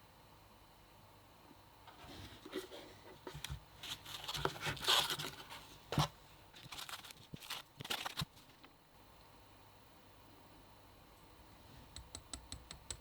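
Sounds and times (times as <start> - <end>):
plastic packaging crinkling: 3.8 - 8.7.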